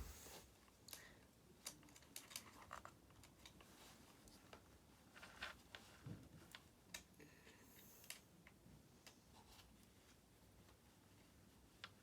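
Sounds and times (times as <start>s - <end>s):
light clicks and taps of small tools: 0.8s - 3.7s, 6.5s - 7.2s.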